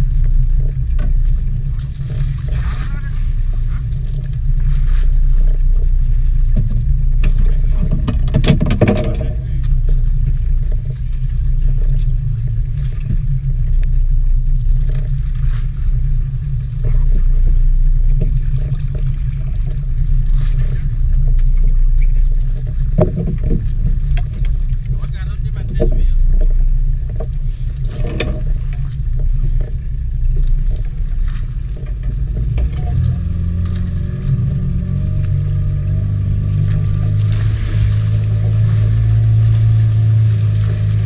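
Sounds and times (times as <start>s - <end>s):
boat engine low rumble: 0.0s - 41.0s
clatter of knocks: 6.6s - 9.4s, 22.9s - 24.5s.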